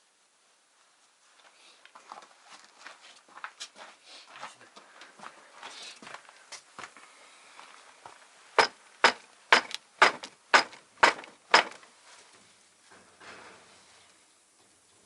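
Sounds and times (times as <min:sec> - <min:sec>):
sharp knocks: 0:08.6 - 0:11.8.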